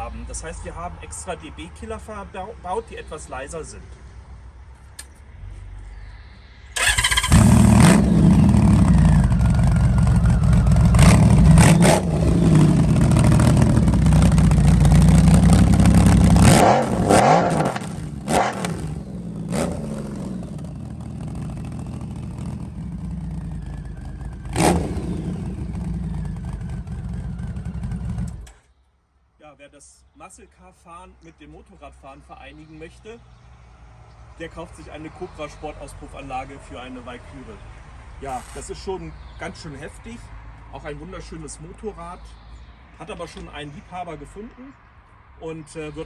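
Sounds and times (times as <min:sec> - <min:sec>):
motorcycle engine starting: 0:06.7 - 0:28.7, 0:38.2 - 0:38.8
motorcycle engine idling: 0:06.8 - 0:16.5, 0:17.7 - 0:28.6
motorcycle throttle blips: 0:06.8 - 0:28.7, 0:38.2 - 0:38.8.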